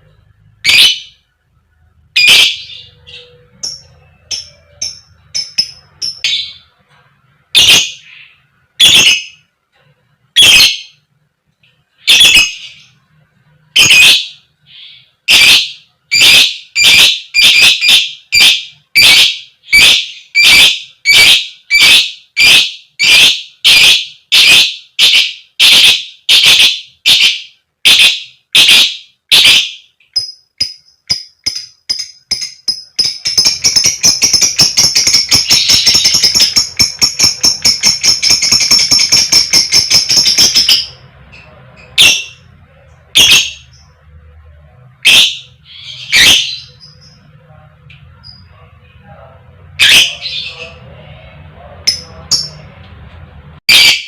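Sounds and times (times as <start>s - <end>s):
lovebird calling: 0.6s - 1.2s, 2.2s - 6.7s, 7.6s - 9.4s, 10.4s - 11.0s, 12.0s - 12.9s, 13.8s - 42.5s, 43.1s - 43.9s, 45.0s - 47.3s.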